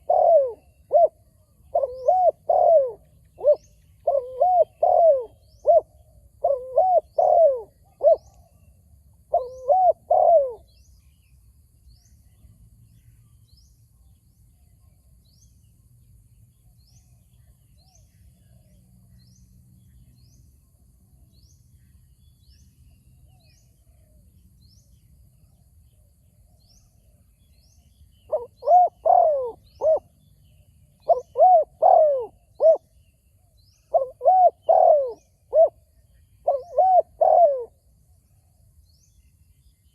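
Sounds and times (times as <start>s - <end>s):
doves cooing: 0.0s - 8.3s, 9.3s - 10.7s, 28.3s - 30.1s, 31.0s - 32.9s, 33.9s - 35.8s, 36.4s - 37.8s.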